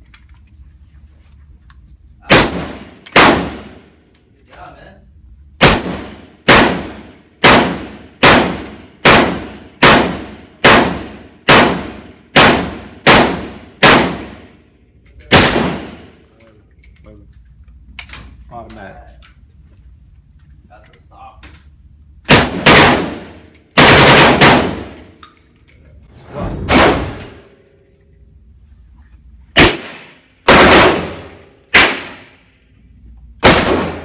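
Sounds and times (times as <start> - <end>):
gunshots with ringing tail: 2.3 - 3.8, 5.6 - 14.5, 15.3 - 16.1, 22.3 - 25.0, 26.1 - 27.5, 29.6 - 32.4, 33.4 - 34.0.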